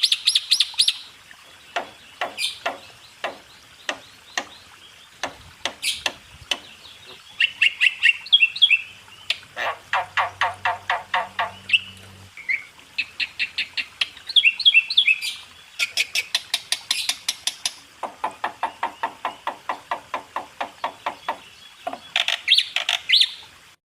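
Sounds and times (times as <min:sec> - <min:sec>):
starlings calling harsh notes: 0:01.8 - 0:16.1.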